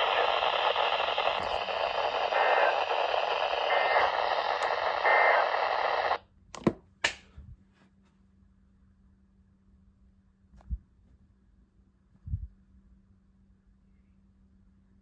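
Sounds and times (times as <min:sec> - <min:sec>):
radio static hiss: 0:00.0 - 0:06.2
sharp clicks: 0:00.0 - 0:06.2.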